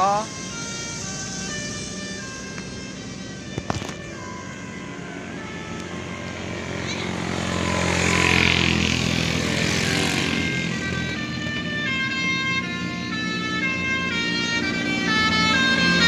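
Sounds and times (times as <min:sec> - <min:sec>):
bus engine: 0:00.0 - 0:16.0
multi-tone musical bus horn: 0:09.4 - 0:16.0.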